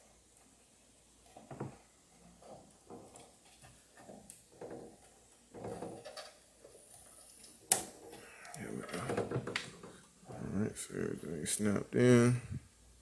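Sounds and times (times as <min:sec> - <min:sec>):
plastic clicks and knocks: 0:08.9 - 0:10.1.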